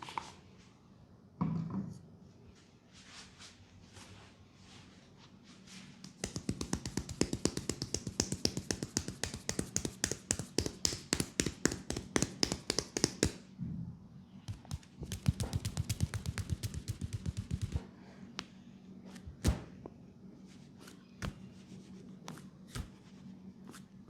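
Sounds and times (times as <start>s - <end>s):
rapid tapping on a leg: 6.1s - 13.4s, 14.5s - 17.9s.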